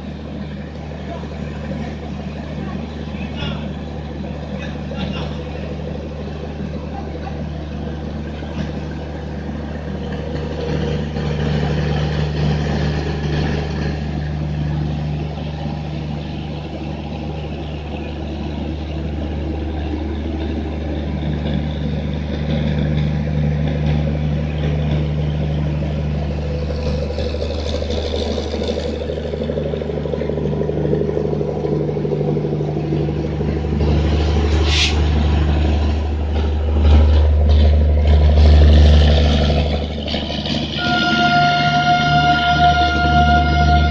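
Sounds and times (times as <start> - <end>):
electric locomotive humming: 0.0 - 43.9
brief high-pitched squeal: 34.6 - 35.0.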